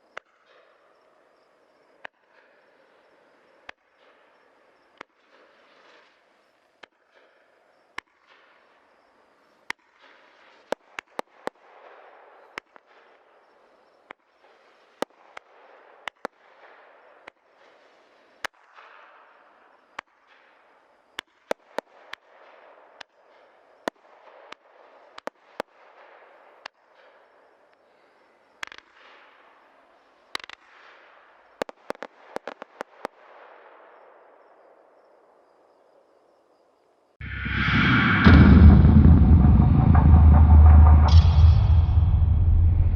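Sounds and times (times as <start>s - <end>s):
firework pops: 31.6s - 33.3s.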